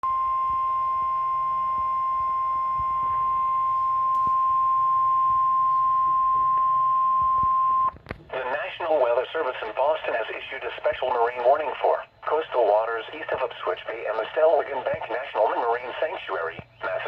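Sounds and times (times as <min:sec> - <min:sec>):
steady high alarm beep: 0:00.0 - 0:07.9.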